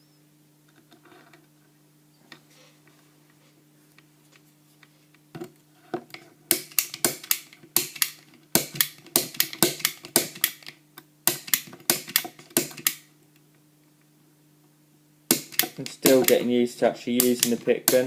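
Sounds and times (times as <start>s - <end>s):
lock pick gun snapping: 6.5s - 10.7s, 11.3s - 13.0s, 15.3s - 16.4s.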